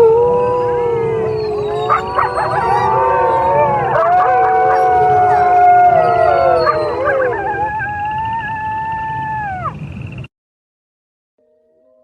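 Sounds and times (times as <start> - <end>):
chorus of howls: 0.0 - 9.8.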